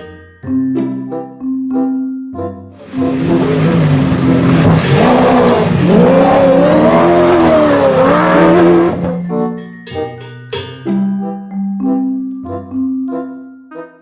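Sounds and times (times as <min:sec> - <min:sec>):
loud rushing noise: 0:02.8 - 0:09.0
racing car engine revving: 0:02.8 - 0:09.2.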